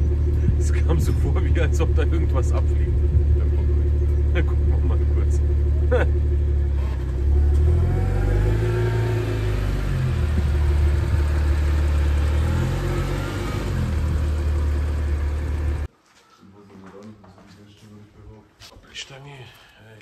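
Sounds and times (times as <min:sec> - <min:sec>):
car engine rumbling: 0:00.0 - 0:15.9.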